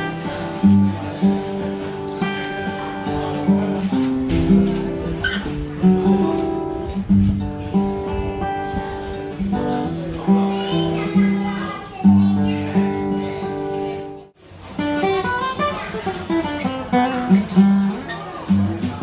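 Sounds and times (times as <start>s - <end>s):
acoustic guitar playing: 0.0s - 19.0s.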